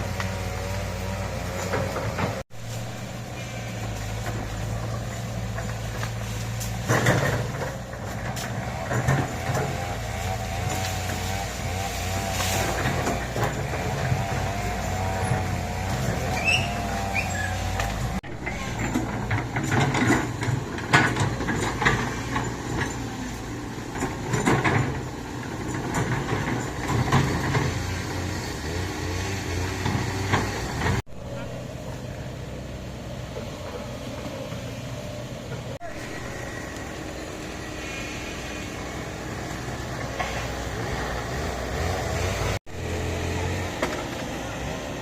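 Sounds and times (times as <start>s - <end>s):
diesel engine running: 0.0s - 45.0s
knocks and clatter: 4.0s - 16.4s, 17.0s - 31.5s.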